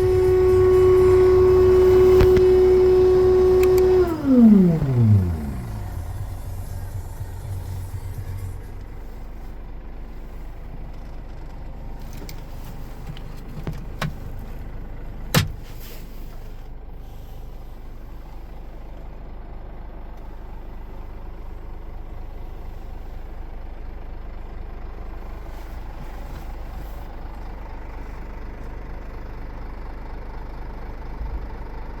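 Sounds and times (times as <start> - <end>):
air compressor running: 0.0 - 9.5
truck engine idling: 0.0 - 32.0.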